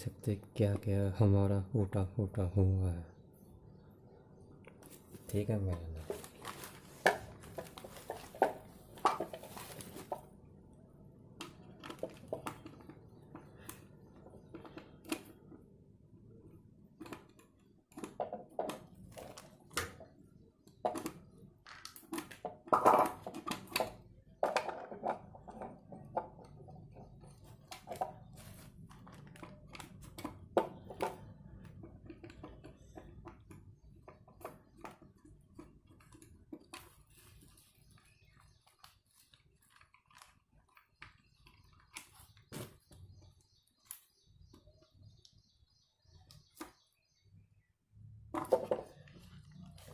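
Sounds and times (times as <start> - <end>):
plastic parts clicking and tapping: 11.2 - 45.4.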